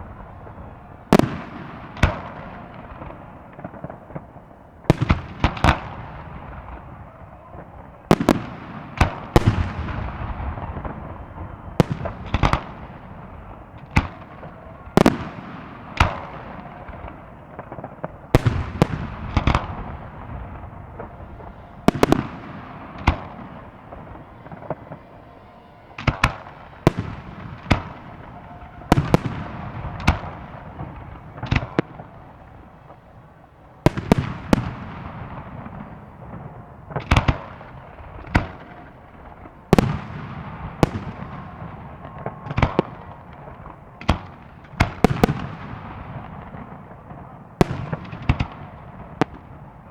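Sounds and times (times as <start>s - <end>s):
rolling echo: 0.0s - 49.9s
fireworks shells bursting: 14.6s - 36.2s.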